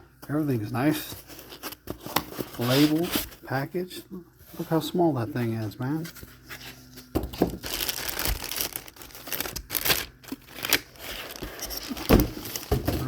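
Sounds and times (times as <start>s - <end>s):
plastic and cardboard packaging crinkling: 0.8s - 3.4s, 6.0s - 13.0s.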